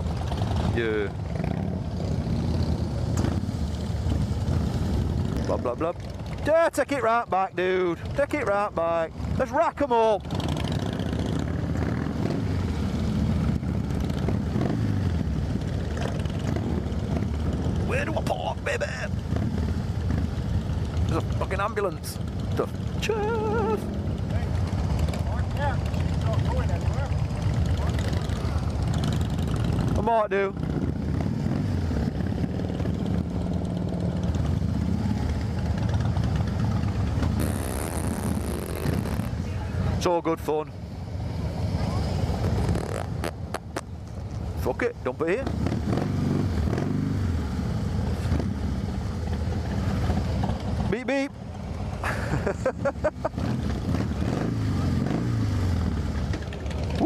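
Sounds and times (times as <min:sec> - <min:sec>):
motorcycle engines running: 0:00.0 - 0:57.0.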